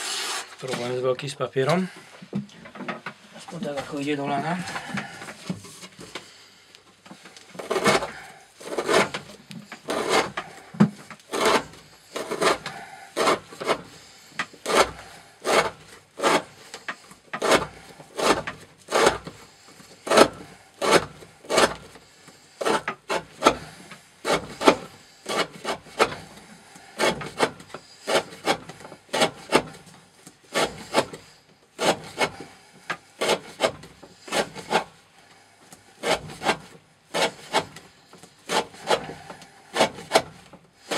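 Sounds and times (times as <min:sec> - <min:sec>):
knife slicing through rope: 0:07.6 - 0:10.7, 0:11.3 - 0:16.8, 0:17.4 - 0:19.4, 0:30.5 - 0:32.5, 0:33.2 - 0:34.9, 0:36.0 - 0:37.9, 0:38.5 - 0:40.9.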